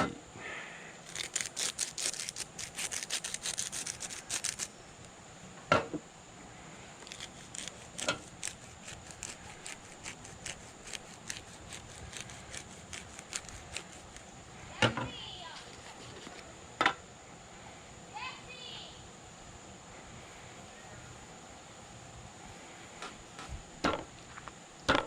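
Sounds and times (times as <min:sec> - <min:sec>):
hands rubbing steak: 0:01.0 - 0:04.7, 0:07.0 - 0:14.3, 0:15.5 - 0:16.4.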